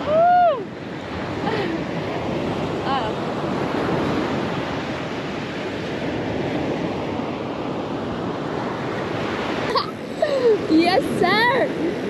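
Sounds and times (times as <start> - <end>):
surf rushing on a beach: 0.0 - 12.0
wind on microphone: 0.0 - 12.0.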